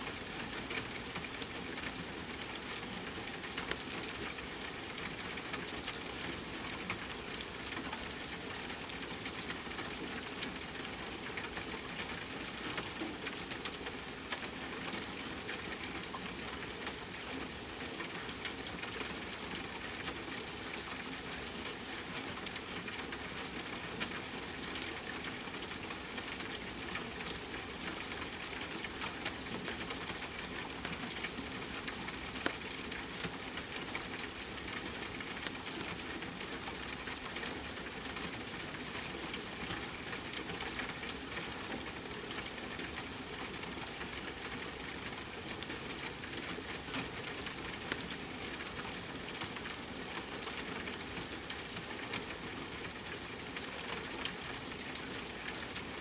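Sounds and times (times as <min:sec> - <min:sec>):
steady rain: 0:00.0 - 0:56.0.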